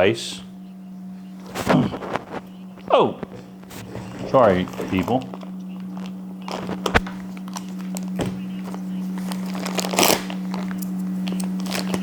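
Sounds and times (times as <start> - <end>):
steady low hum: 0.0 - 12.0
plastic bag crinkling and tearing: 3.2 - 12.0.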